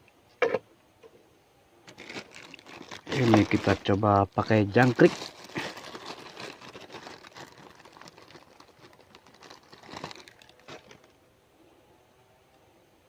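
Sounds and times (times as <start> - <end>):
plastic bag crinkling: 1.8 - 11.2.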